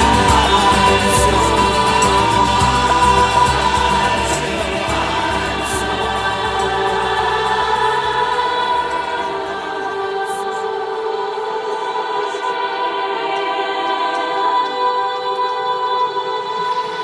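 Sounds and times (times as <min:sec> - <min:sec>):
bass: 0:00.0 - 0:09.3
light percussion: 0:00.0 - 0:09.7
vocal harmonies: 0:00.0 - 0:17.0.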